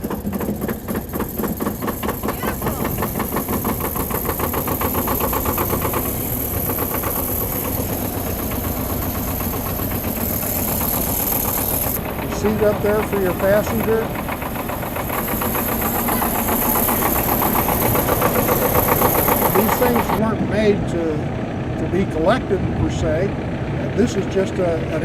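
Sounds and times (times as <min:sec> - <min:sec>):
diesel engine starting and knocking: 0:00.0 - 0:25.0.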